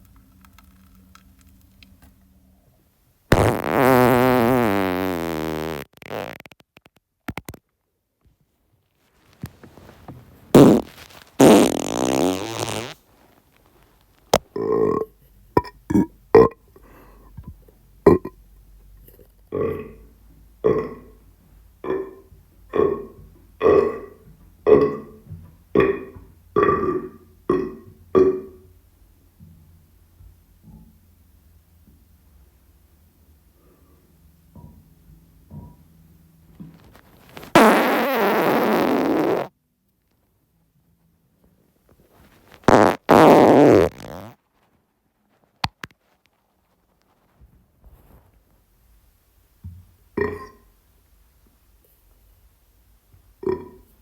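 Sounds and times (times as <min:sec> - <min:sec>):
person farting: 0:03.3 - 0:07.6, 0:10.5 - 0:13.1, 0:14.3 - 0:16.6, 0:18.1 - 0:18.4, 0:20.7 - 0:21.1, 0:22.8 - 0:25.2, 0:25.8 - 0:28.6, 0:37.3 - 0:39.5, 0:42.5 - 0:44.4, 0:50.2 - 0:50.6, 0:53.4 - 0:53.8
person burping: 0:14.6 - 0:16.6, 0:18.1 - 0:18.4, 0:19.5 - 0:20.0, 0:50.2 - 0:50.6, 0:53.4 - 0:53.8.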